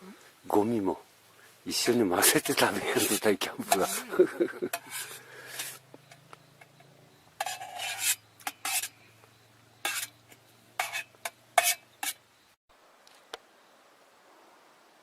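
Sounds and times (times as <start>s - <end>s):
utensils scraping dishes: 1.8s - 6.8s, 7.4s - 9.0s, 9.8s - 10.2s, 10.8s - 12.2s.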